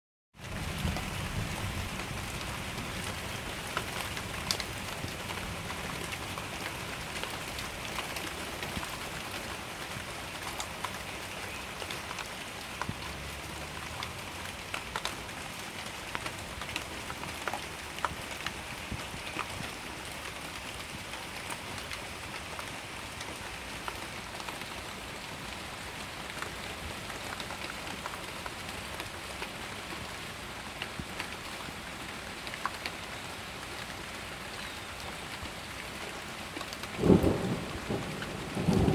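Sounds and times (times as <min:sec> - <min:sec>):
heavy rain: 0:00.4 - 0:38.9
raindrops ticking on surfaces: 0:00.4 - 0:38.9.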